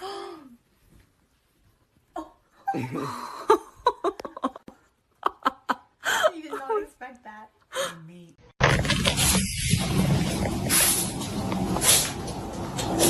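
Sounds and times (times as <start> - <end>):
person laughing: 2.7 - 6.8.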